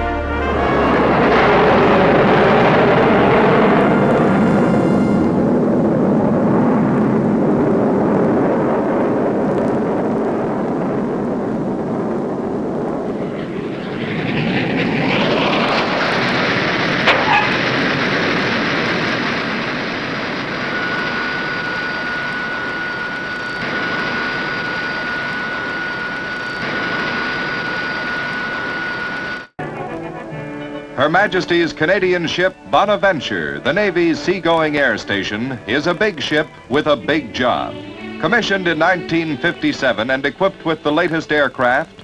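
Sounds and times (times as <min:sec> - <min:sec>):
thin steady whine: 0:00.0 - 0:07.6, 0:10.5 - 0:30.0
aircraft engine rush: 0:00.0 - 0:40.7.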